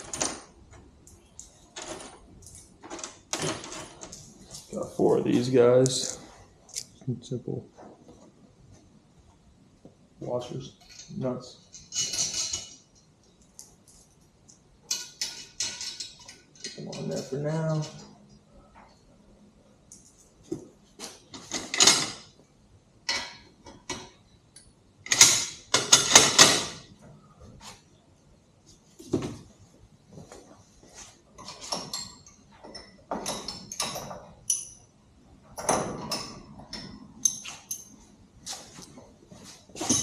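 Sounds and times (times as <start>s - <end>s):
metal hardware clinking and scraping: 0.0s - 4.8s, 10.6s - 18.2s, 21.0s - 22.4s, 23.1s - 27.0s, 31.0s - 40.0s.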